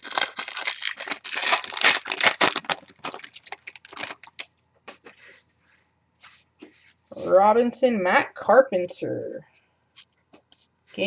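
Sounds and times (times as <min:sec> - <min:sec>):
card pack wrapper tearing: 0:00.0 - 0:04.5.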